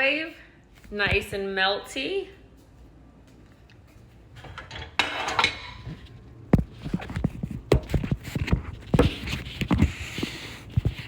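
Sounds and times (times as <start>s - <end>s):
dishes and utensils clattering: 4.4s - 6.0s.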